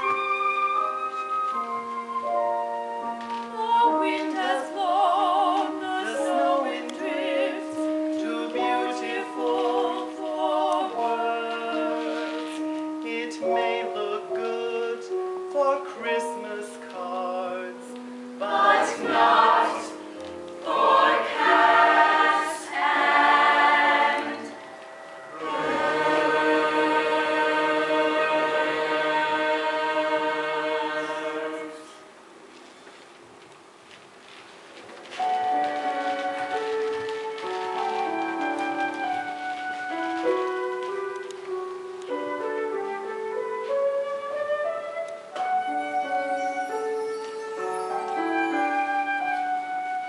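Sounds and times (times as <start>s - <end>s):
cast singing in chorus: 18.4s - 20.0s, 20.6s - 24.7s, 25.3s - 32.0s.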